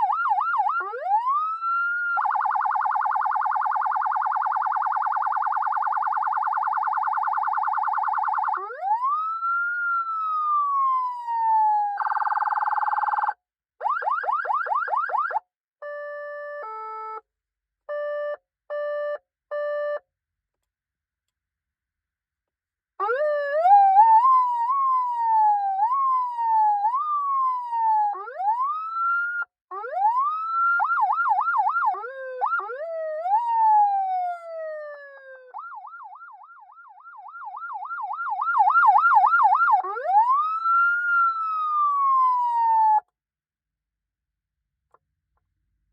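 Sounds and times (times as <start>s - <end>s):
electronic siren cycling tones: 0.0s - 10.2s, 23.0s - 43.0s.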